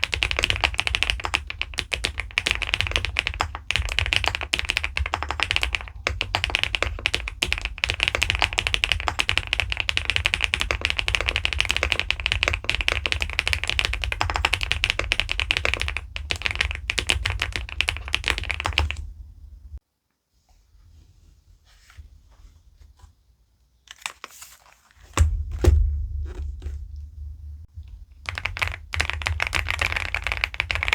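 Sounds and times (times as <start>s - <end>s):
mechanical keyboard typing: 0.0s - 19.1s, 28.2s - 30.9s.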